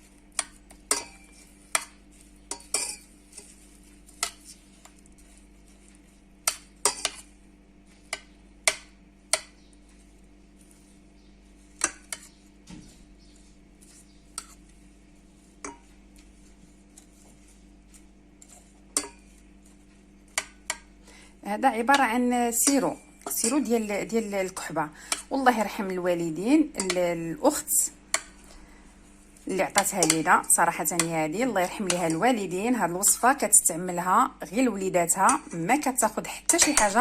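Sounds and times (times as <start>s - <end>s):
faint steady hum: 0.0s - 37.0s
spoon clinking against saucepan: 0.4s - 1.9s, 2.5s - 3.1s, 19.0s - 19.2s, 26.7s - 27.0s, 29.7s - 30.3s, 36.5s - 37.0s.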